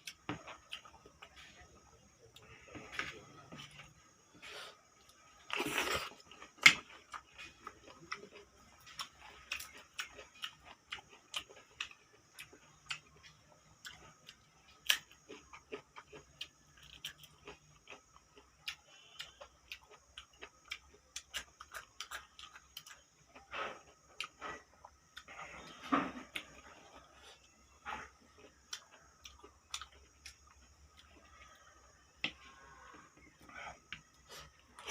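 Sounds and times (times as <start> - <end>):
person chewing with mouth clicks: 5.5 - 31.6.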